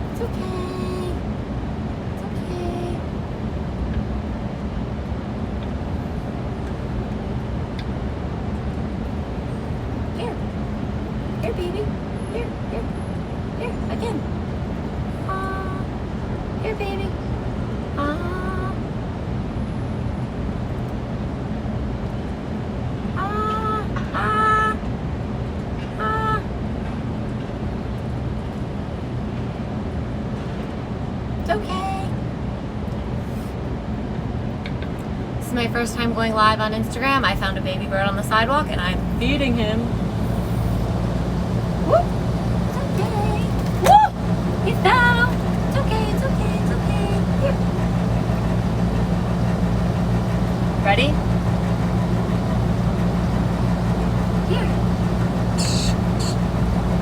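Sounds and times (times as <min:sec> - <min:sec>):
city traffic rumble: 0:00.0 - 0:57.0
steady low rumbling: 0:34.7 - 0:57.0.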